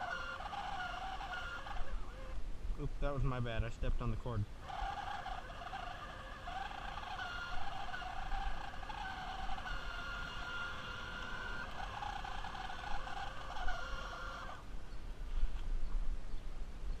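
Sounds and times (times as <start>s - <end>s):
toy car motor whining: 0.0s - 2.4s, 4.6s - 14.6s.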